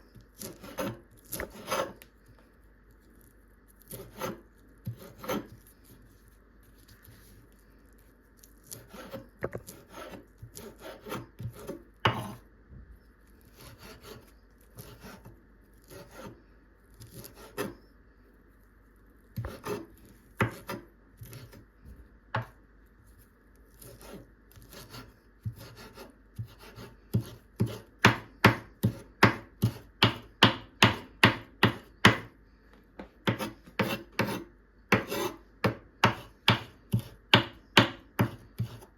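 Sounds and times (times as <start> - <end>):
knife chopping on wooden board: 0.4 - 2.0, 3.9 - 5.6, 8.7 - 12.4, 19.4 - 21.6, 22.3 - 22.6, 23.8 - 32.3, 33.0 - 38.8.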